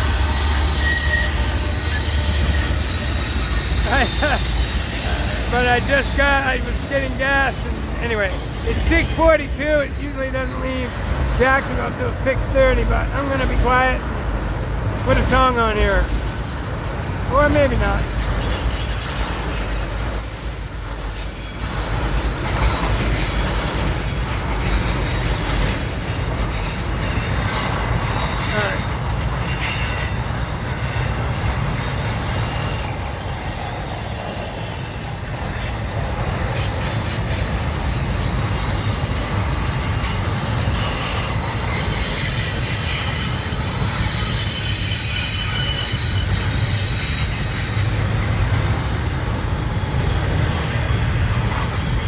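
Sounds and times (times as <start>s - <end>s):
high-pitched wheel squeals: 0.0s - 10.9s, 15.2s - 21.6s, 27.0s - 48.8s
freight train rumbling: 0.0s - 52.0s.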